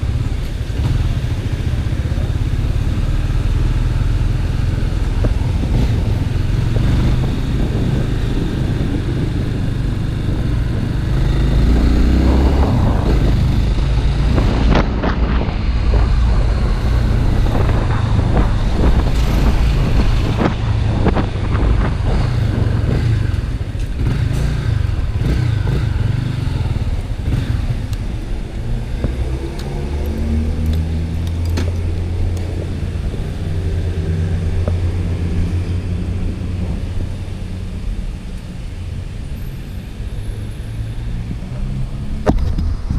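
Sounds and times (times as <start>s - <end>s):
motorcycle engine running: 0.0s - 28.7s.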